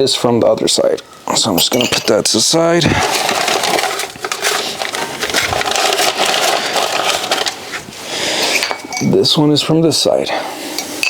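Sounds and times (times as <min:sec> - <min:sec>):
packaging crinkling rustle: 0:00.9 - 0:08.9.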